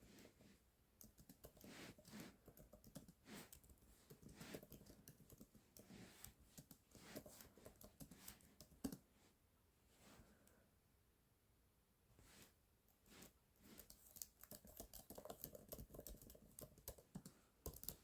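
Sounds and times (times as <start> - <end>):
typing on computer keyboard: 1.0 - 1.7, 2.4 - 5.8, 6.5 - 9.0, 13.8 - 18.0.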